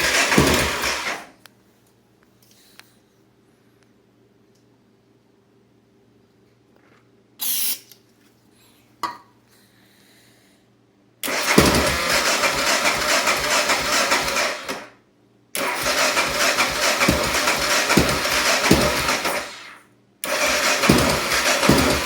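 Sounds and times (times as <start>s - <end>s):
electric starter cranking engine: 0.0s - 1.3s, 11.2s - 14.9s, 15.6s - 22.0s.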